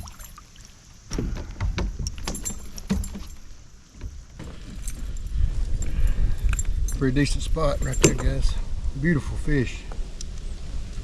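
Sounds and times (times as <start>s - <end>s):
fishing tackle clicking and jingling: 2.1s - 3.7s, 4.6s - 8.6s
low rumble: 5.1s - 11.0s.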